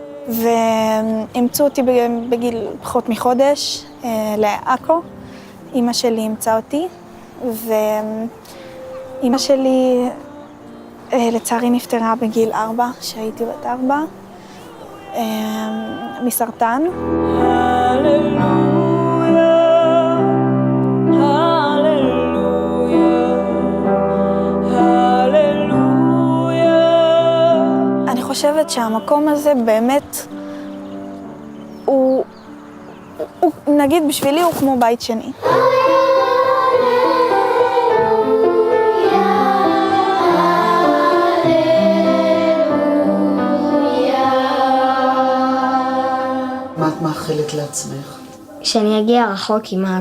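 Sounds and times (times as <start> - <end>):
slow gentle music: 0.0 - 49.0
girl singing held notes: 7.5 - 19.4, 35.3 - 46.8
instrumental accompaniment: 16.8 - 34.0, 35.4 - 48.6.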